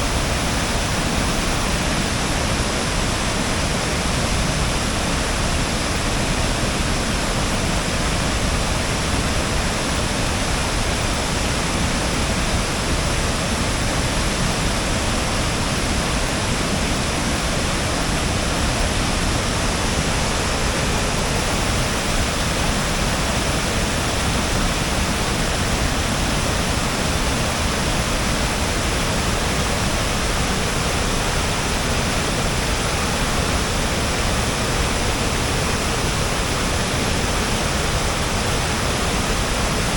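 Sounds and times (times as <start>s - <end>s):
waterfall rushing: 0.0s - 3.8s, 17.4s - 39.9s.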